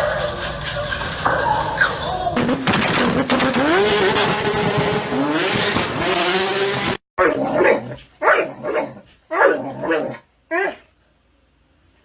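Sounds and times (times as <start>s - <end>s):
dog barking: 7.2s - 10.9s.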